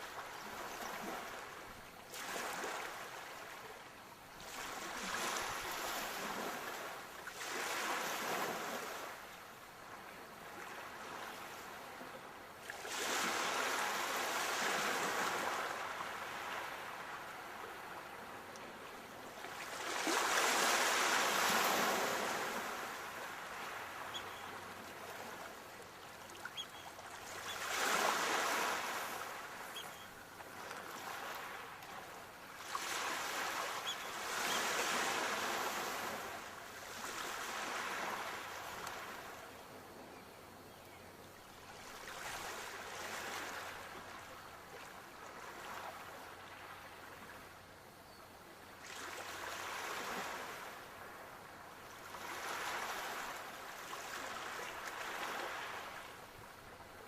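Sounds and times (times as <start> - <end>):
sea waves breaking on shore: 0.0 - 39.6, 41.5 - 47.5, 48.8 - 57.0.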